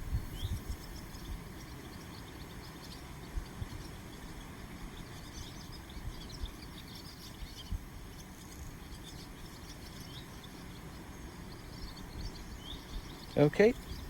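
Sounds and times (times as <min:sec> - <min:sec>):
wind buffeting microphone: 0:00.0 - 0:02.2
swallows twittering: 0:00.0 - 0:14.0.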